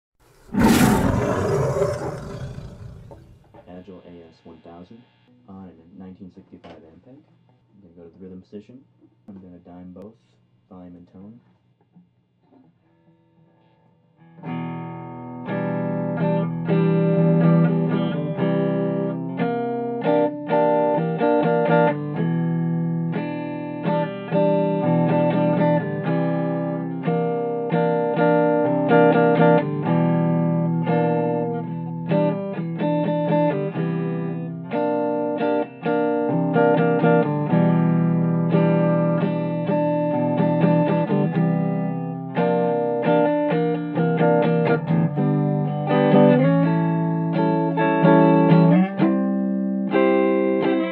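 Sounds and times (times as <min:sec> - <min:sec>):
electric guitar riff: 0:15.5 - 0:50.9.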